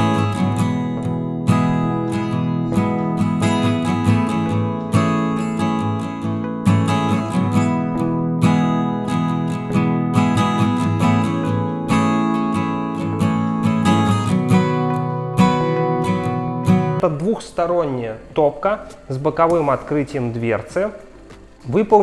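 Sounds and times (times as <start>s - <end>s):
acoustic guitar strumming chords: 0.0s - 17.0s, 18.8s - 22.0s.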